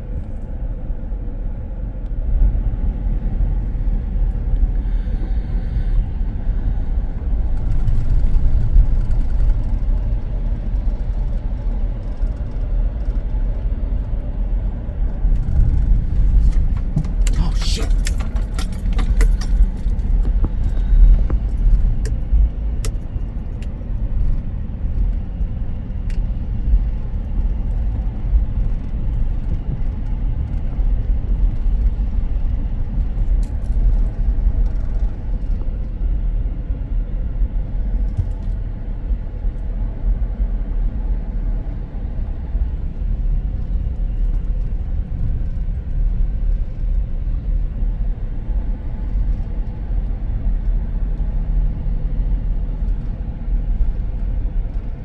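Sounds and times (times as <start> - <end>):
road noise: 0.0 - 55.0
car engine running: 1.7 - 40.4.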